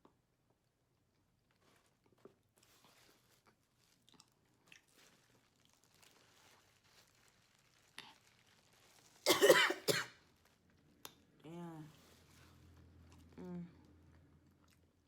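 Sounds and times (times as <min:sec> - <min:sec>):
close chewing and wet mouth sounds: 0:00.1 - 0:06.2, 0:12.2 - 0:15.0
throat clearing or cough: 0:09.3 - 0:10.1.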